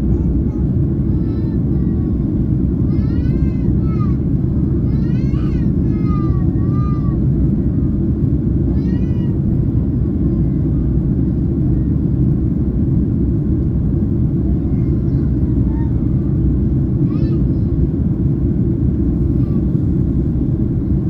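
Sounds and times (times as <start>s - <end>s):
airplane cabin rumble: 0.0s - 21.0s.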